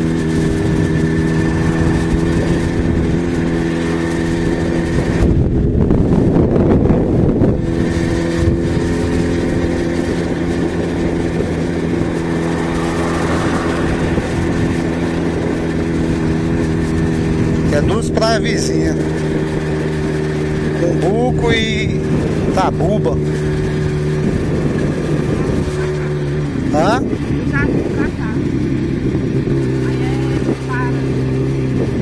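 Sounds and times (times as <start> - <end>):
rush of noise: 0.0 - 18.1
motorcycle engine cruising: 0.0 - 32.0.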